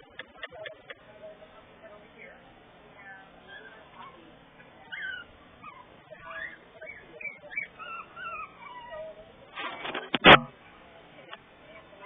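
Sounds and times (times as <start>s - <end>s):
puppies whimpering: 3.4s - 9.4s.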